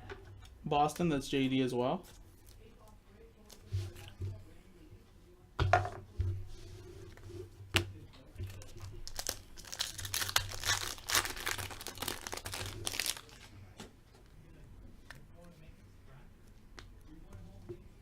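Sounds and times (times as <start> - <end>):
foil wrapper crinkling and tearing: 8.9 - 13.5.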